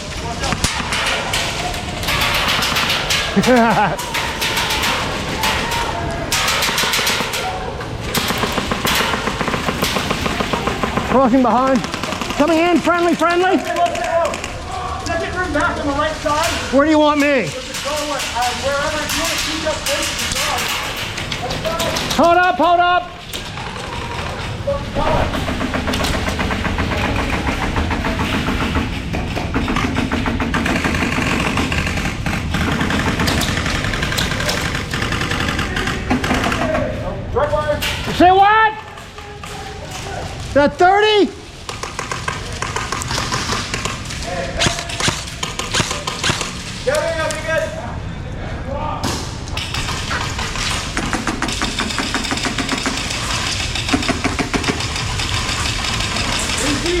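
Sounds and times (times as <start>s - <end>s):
airsoft guns firing full auto: 0.6s - 5.7s, 6.3s - 22.8s, 25.3s - 36.8s, 41.7s - 46.7s, 49.6s - 57.0s.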